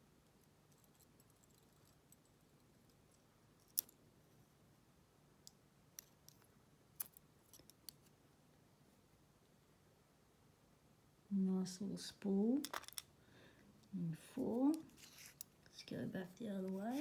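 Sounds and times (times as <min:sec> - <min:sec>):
small metal clicks: 0:12.6 - 0:13.1.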